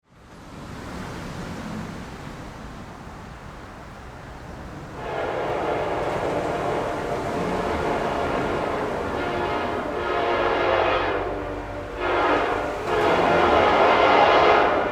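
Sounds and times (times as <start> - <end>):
train rumbling: 0.6 - 14.9
locomotive air horn chord: 4.7 - 14.9.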